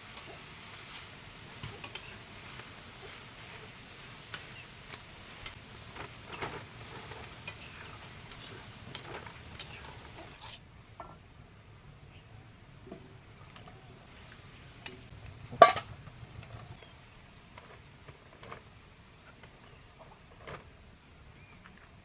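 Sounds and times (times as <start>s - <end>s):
dishes and utensils clicking: 1.6s - 10.4s, 14.8s - 16.7s
dishes clattering: 15.5s - 16.7s.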